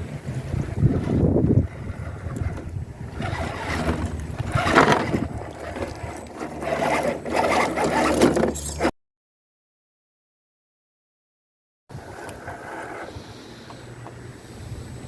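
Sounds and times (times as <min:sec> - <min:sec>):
wind on microphone: 0:00.0 - 0:08.1, 0:14.3 - 0:15.0
low motor hum: 0:00.0 - 0:08.9
tyres scraping and crunching: 0:00.8 - 0:08.9.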